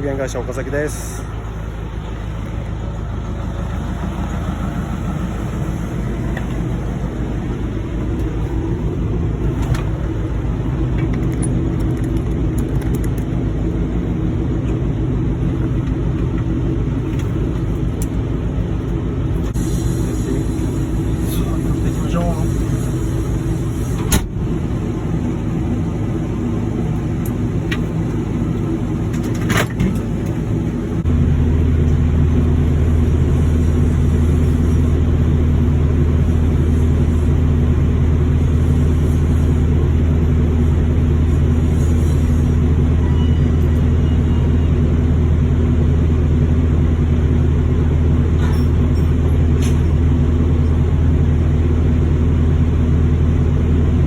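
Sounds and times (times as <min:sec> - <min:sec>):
heavy machinery droning: 0:00.0 - 0:54.0
sharp clicks: 0:11.0 - 0:13.4.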